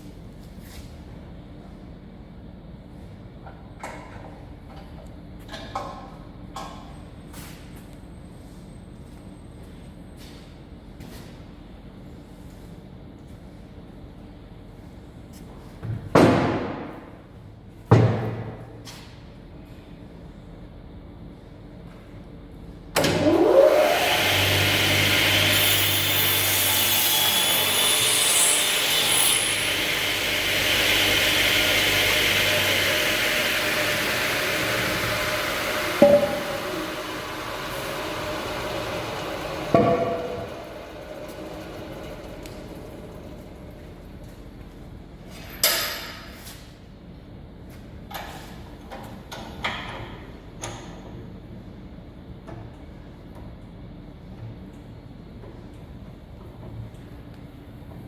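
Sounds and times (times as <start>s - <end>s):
circular saw cutting wood: 23.2s - 43.8s.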